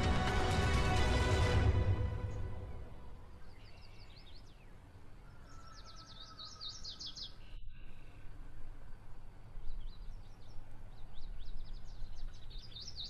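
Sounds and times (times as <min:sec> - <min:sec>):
small birds chirping: 0:03.3 - 0:13.0.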